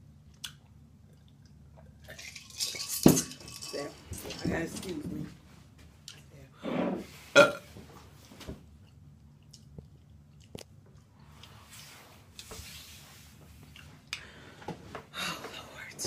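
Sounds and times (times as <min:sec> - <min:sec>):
chewing and lip smacking: 0:00.2 - 0:02.2, 0:08.8 - 0:11.6.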